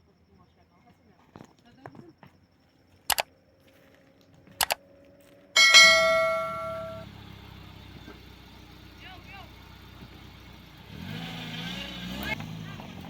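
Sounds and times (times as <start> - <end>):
bell-like metallic strike: 5.6 - 7.0.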